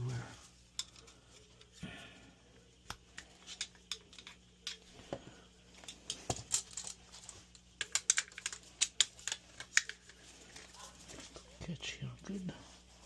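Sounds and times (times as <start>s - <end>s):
tools clicking and tapping: 0.8s - 1.7s, 2.9s - 4.9s, 5.8s - 10.7s.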